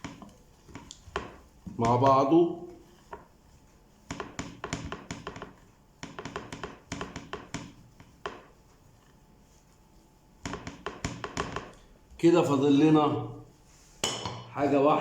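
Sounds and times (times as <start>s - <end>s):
utensil tapping cooking pan: 0.0s - 9.5s, 10.3s - 12.0s, 14.0s - 14.5s.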